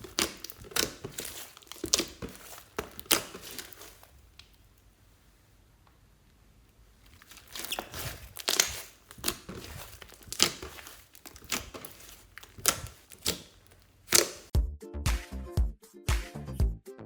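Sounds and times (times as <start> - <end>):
slime squishing and popping: 0.0 - 4.6, 7.1 - 14.5.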